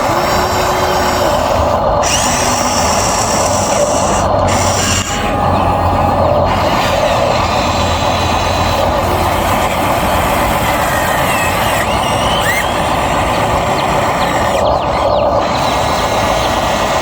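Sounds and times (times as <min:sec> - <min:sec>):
toy excavator motors whirring: 0:00.0 - 0:17.0.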